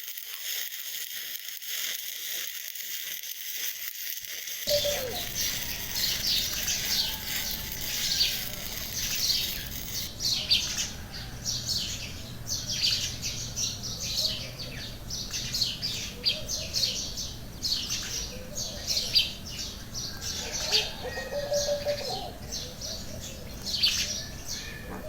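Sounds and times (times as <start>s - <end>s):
birds chirping: 4.7s - 25.0s.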